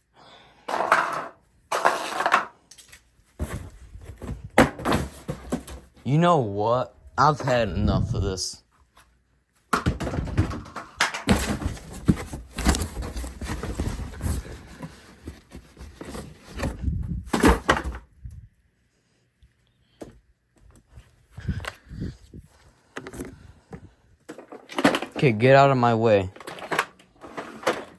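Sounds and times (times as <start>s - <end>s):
plastic vacuum cleaner clattering: 9.8s - 16.7s, 24.3s - 25.4s, 26.3s - 27.9s.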